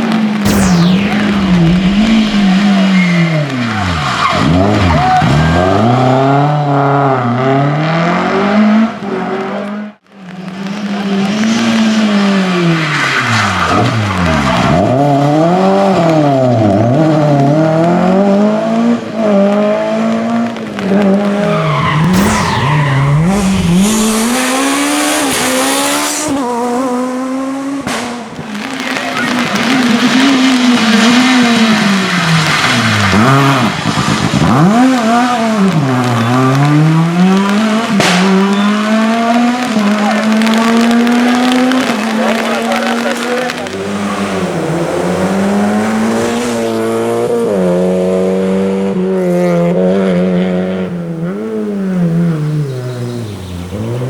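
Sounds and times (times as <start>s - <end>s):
rally car engines revving: 0.0s - 54.0s
loud hiss: 21.3s - 26.3s.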